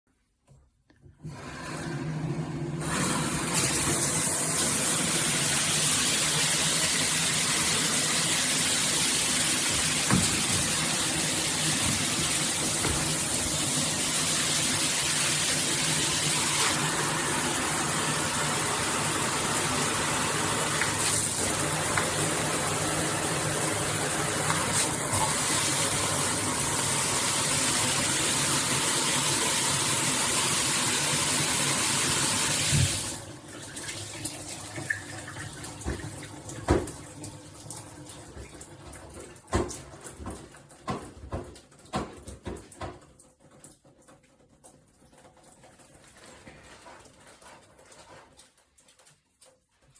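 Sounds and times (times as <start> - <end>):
shower head spraying water: 2.8 - 33.2.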